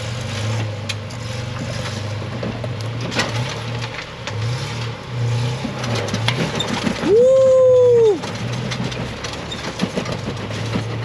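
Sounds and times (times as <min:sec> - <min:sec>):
engine running low: 0:00.0 - 0:11.0
sharp clicks and knocks: 0:05.6 - 0:07.1, 0:08.2 - 0:11.0.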